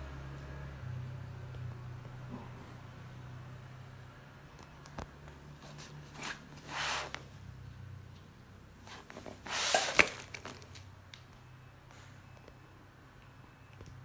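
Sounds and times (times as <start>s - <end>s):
handling rustles: 5.6s - 7.4s, 8.7s - 10.9s.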